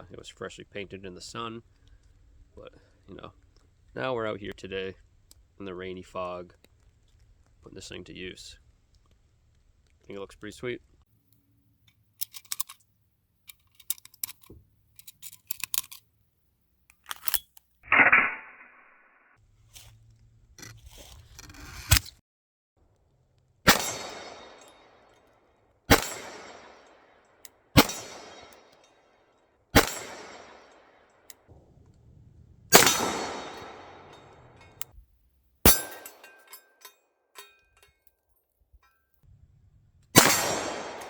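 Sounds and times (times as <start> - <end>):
light metal clicks and clinks: 11.8 - 16.1, 35.7 - 39.1
pistol shots echoing: 23.7 - 25.2, 25.9 - 28.9, 29.7 - 31.8, 32.7 - 34.8, 35.7 - 36.4, 40.2 - 41.0.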